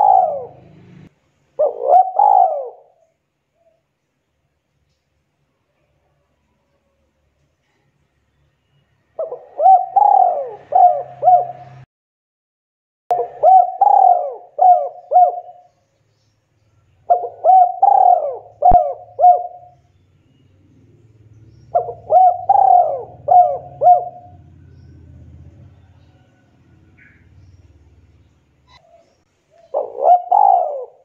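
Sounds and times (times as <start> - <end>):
dove cooing: 0.0 - 3.8, 9.2 - 11.8, 13.1 - 15.7, 17.0 - 19.8, 21.7 - 27.6, 28.6 - 31.0.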